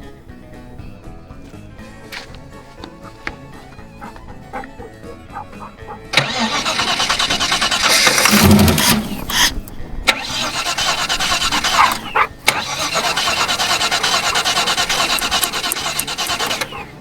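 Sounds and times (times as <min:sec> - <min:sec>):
engine cranking on starter: 0:01.4 - 0:17.0.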